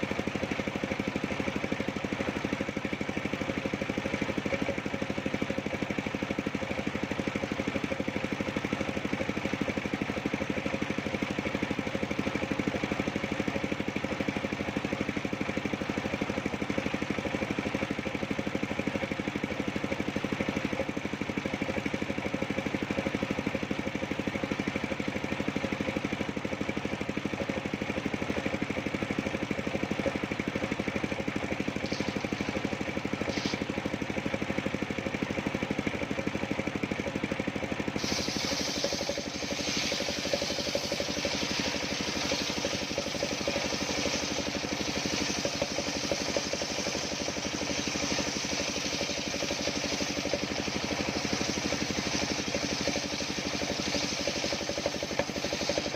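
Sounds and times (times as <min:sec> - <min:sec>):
sawmill engine running: 0:00.0 - 0:55.9
high hiss: 0:38.0 - 0:55.9.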